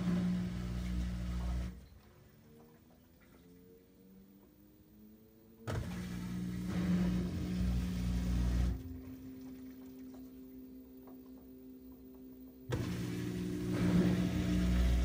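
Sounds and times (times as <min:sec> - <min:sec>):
washing machine loud drone: 0:00.0 - 0:04.0, 0:05.6 - 0:15.0
washing machine hum: 0:00.0 - 0:04.1, 0:05.6 - 0:15.0.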